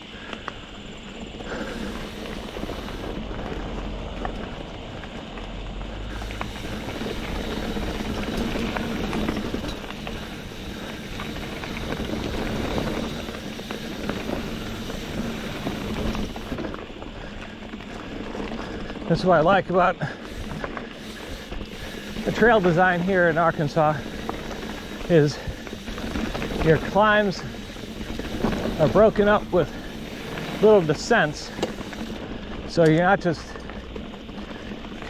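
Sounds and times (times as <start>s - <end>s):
bike clicking and rattling: 0.0s - 35.0s
tyres rolling over dirt and stones: 0.1s - 35.0s.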